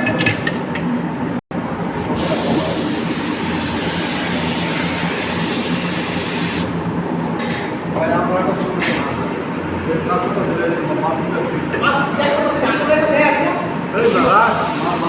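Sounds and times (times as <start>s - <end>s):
machine hum: 1.3s - 9.1s
loud hiss: 2.0s - 7.1s, 14.0s - 15.0s.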